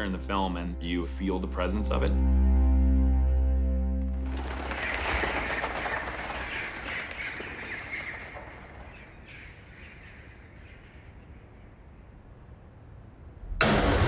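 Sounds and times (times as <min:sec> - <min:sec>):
flock of birds chattering: 0:05.8 - 0:11.2.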